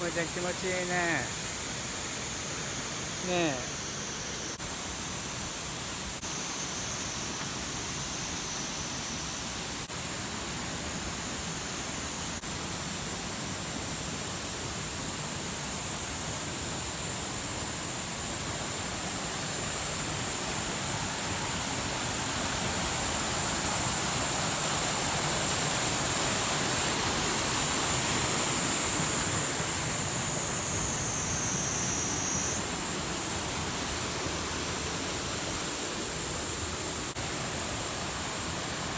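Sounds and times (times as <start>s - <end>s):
high hiss: 0.0s - 38.9s.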